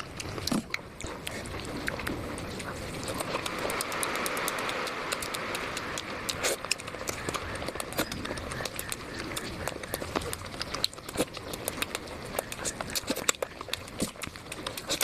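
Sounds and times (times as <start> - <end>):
mouth chewing food: 0.0 - 15.0.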